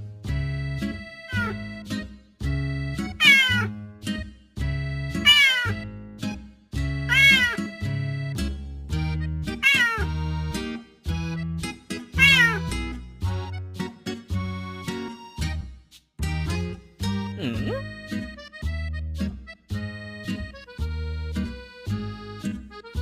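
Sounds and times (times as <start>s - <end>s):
upbeat music with bass line: 0.0s - 23.0s
cat meowing: 1.3s - 1.6s, 3.2s - 3.7s, 5.2s - 5.8s, 7.1s - 7.8s, 9.6s - 10.2s, 12.2s - 12.7s.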